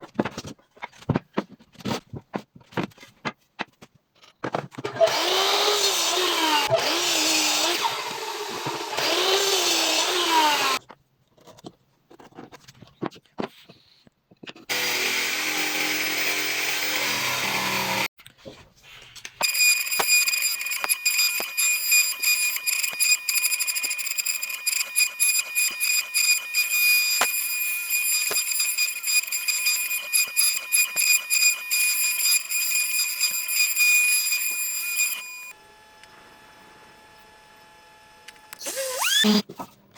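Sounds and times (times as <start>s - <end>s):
power tool running: 5.0s - 10.8s, 14.7s - 18.1s, 19.4s - 39.4s.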